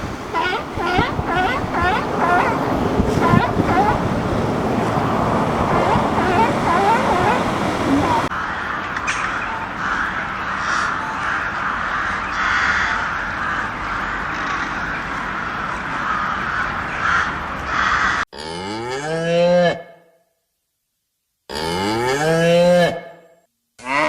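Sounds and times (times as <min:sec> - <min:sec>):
harsh calls: 0:00.0 - 0:08.3
noisy background: 0:00.0 - 0:17.6
cow mooing: 0:00.3 - 0:08.3.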